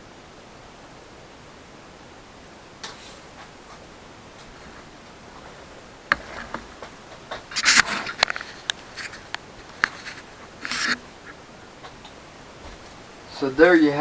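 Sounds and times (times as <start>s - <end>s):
short scrapes: 7.5s - 11.4s.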